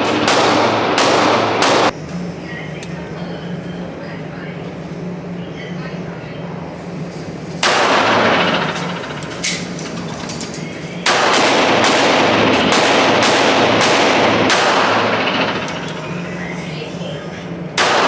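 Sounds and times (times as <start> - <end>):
gunshots echoing indoors: 0.0 - 2.0, 7.6 - 16.7, 17.7 - 18.0
steady low hum: 0.0 - 18.0.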